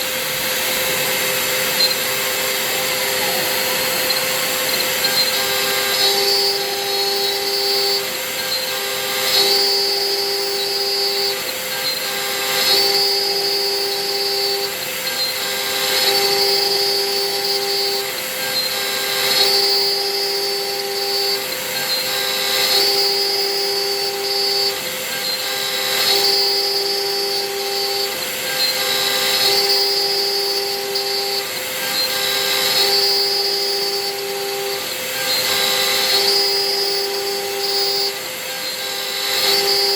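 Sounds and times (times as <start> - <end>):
drive motors whining: 0.0 - 39.9
milling machine spindle tone: 0.0 - 39.9.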